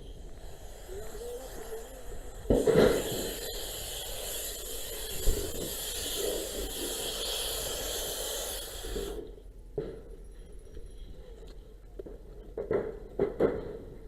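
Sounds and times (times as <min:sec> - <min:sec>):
water hissing onto fire: 0:00.0 - 0:09.3.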